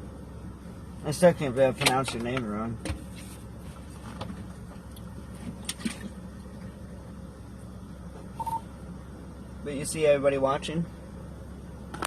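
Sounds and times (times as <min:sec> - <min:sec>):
steady low hum: 0:00.0 - 0:12.0
high beep: 0:08.4 - 0:08.7.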